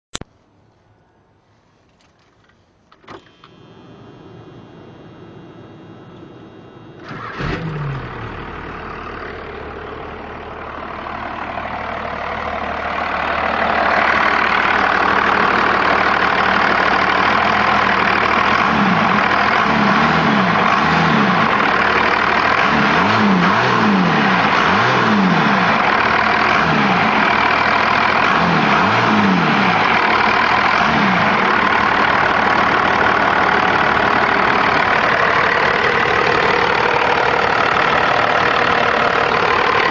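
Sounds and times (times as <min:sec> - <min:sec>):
truck engine starting and running: 0:01.9 - 0:39.9.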